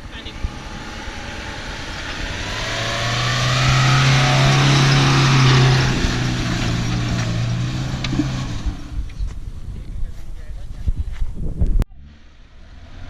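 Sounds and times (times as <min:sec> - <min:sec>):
off-road vehicle engine running hard: 0:00.0 - 0:09.3
tyre and track noise: 0:00.0 - 0:11.8.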